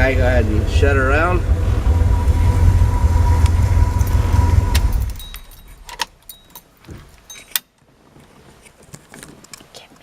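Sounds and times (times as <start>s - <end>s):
car engine switching off: 0.0s - 6.3s
ignition keys clicking and jingling: 4.8s - 7.7s.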